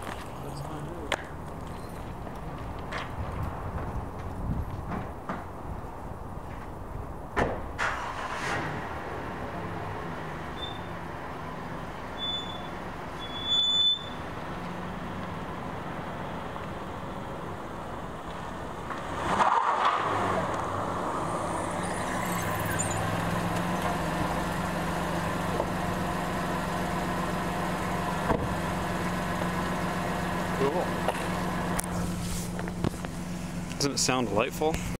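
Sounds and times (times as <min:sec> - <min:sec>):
car engine humming: 0:00.0 - 0:04.4, 0:08.0 - 0:34.9
short high beeps: 0:21.2 - 0:24.4.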